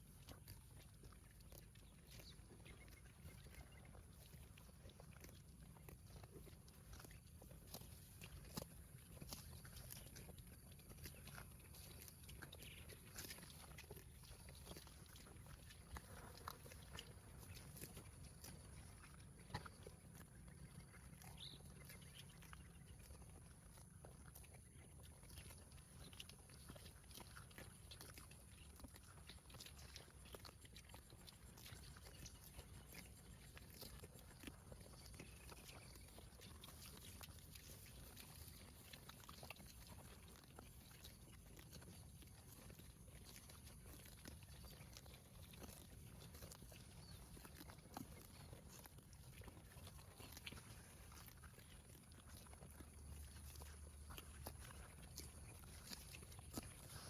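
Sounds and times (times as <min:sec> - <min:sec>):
cow chewing grass: 0:00.0 - 0:57.0.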